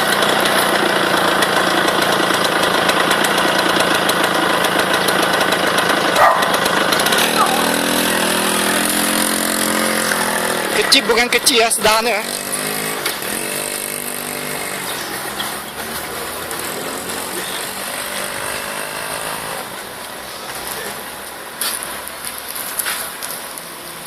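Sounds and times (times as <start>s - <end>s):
vehicle engine running: 0.0s - 24.0s.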